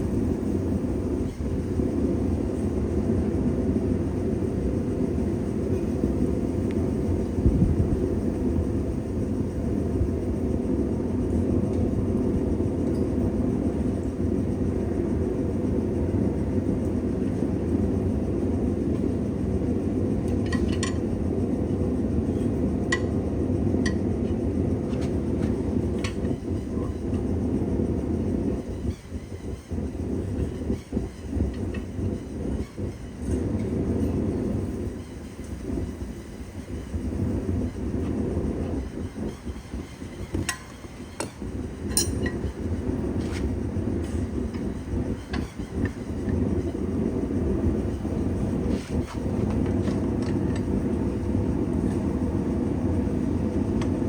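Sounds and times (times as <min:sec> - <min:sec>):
light metal clinks: 0:41.9 - 0:42.5.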